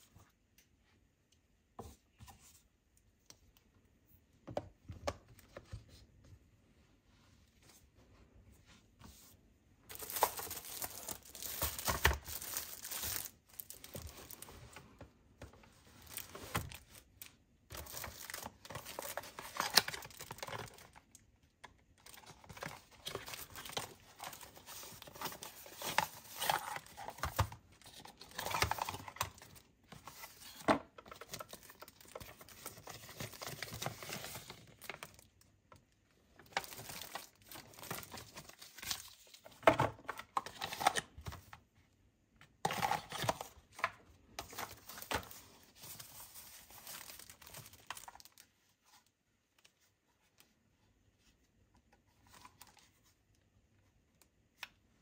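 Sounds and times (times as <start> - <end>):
packaging crinkling and tearing: 9.9 - 14.6, 17.7 - 21.2, 44.4 - 48.5.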